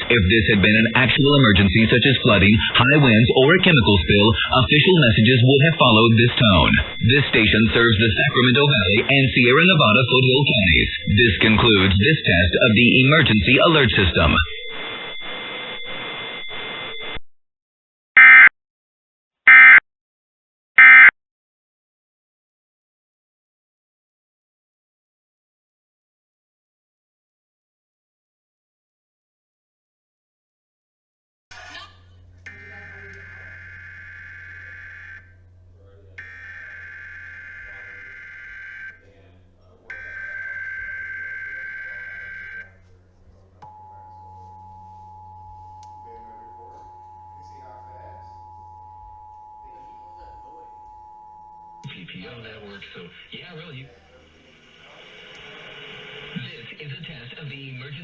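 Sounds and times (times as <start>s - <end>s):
modem-like data bursts: 0.0s - 17.2s, 31.5s - 58.0s
broadcast hiss with faint tones: 32.0s - 51.1s, 51.7s - 58.0s.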